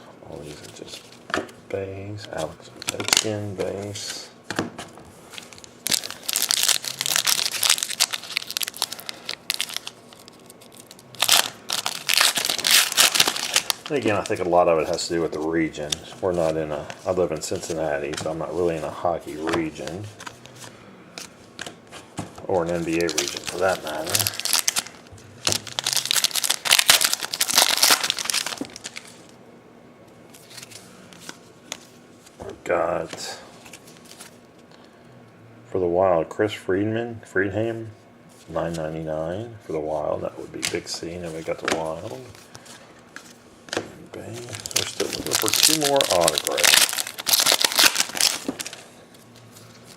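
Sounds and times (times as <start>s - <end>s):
foil wrapper crinkling: 5.4s - 17.8s, 22.5s - 29.3s, 44.3s - 49.9s.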